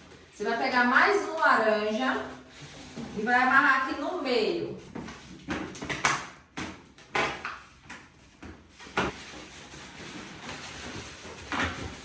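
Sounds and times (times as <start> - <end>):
balloons rubbing and rustling: 8.6 - 12.0.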